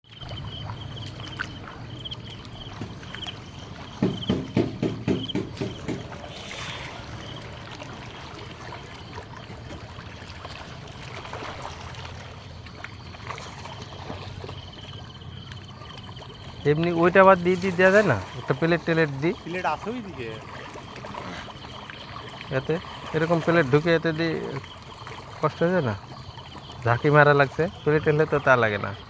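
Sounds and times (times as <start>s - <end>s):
water splashing in pond: 0.0s - 29.0s.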